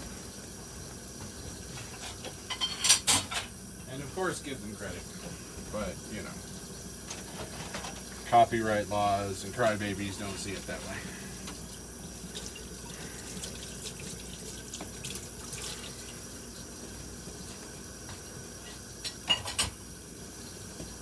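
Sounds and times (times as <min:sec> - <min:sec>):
dishes clinking: 0:01.8 - 0:03.6, 0:18.6 - 0:19.8
tap water running into sink: 0:09.4 - 0:18.3.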